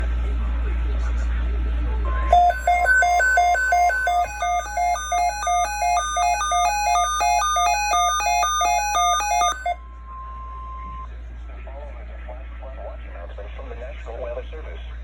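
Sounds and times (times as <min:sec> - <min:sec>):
electronic beeping melody: 0:02.3 - 0:09.8.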